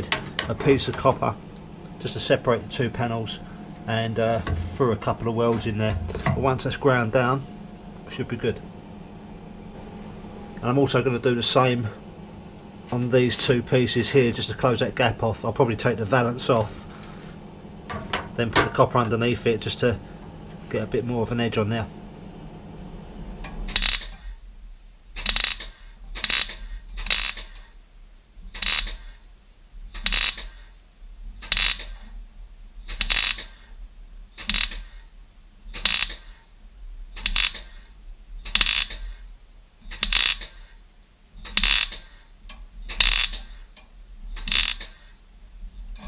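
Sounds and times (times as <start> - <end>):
welder crackling bursts: 23.6 - 24.4, 25.1 - 27.7, 28.5 - 29.2, 29.9 - 30.7, 31.4 - 32.1, 32.8 - 33.7, 34.4 - 35.0, 35.6 - 36.5, 37.1 - 39.2, 39.8 - 40.7, 41.4 - 42.2, 42.8 - 43.6, 44.3 - 45.1.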